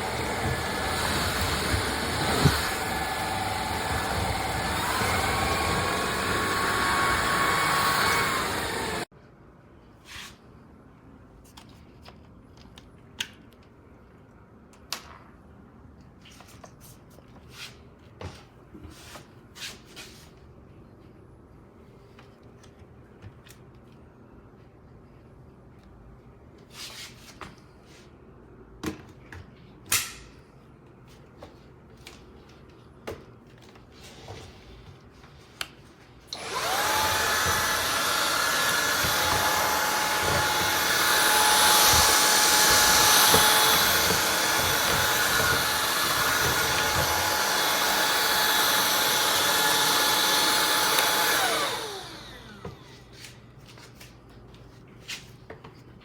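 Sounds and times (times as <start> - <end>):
vacuum motor whining: 0.0 - 9.1, 36.3 - 52.9.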